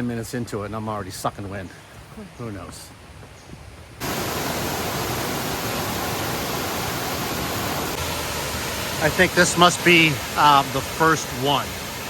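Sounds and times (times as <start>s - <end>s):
waterfall rushing: 4.0s - 12.0s.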